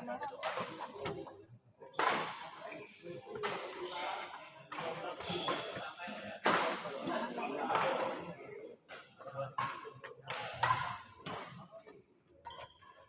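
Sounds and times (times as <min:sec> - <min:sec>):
background chatter: 0:00.0 - 0:12.4
racket striking shuttlecock: 0:02.0 - 0:02.5.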